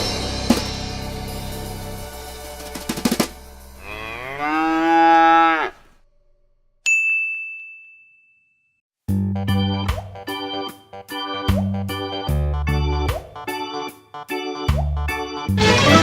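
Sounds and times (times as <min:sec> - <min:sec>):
music: 0:00.0 - 0:03.8, 0:09.1 - 0:16.0
cow mooing: 0:03.8 - 0:05.8, 0:15.6 - 0:16.0.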